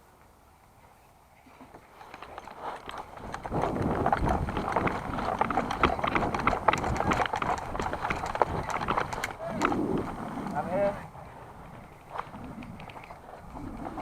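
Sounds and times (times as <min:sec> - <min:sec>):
running footsteps: 0:01.5 - 0:14.0
gear rattling: 0:01.7 - 0:10.9.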